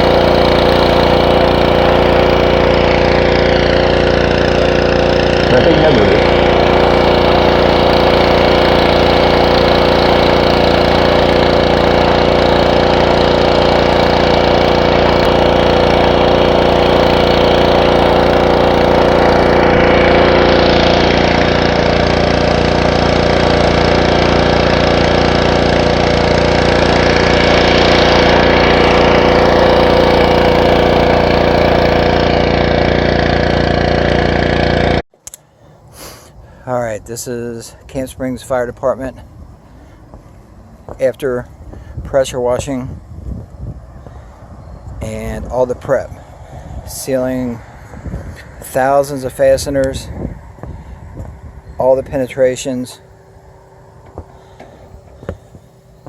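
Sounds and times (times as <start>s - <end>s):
water spray hiss: 0.0s - 3.1s, 35.9s - 36.4s
pressure washer engine running: 0.0s - 36.6s, 44.6s - 56.0s.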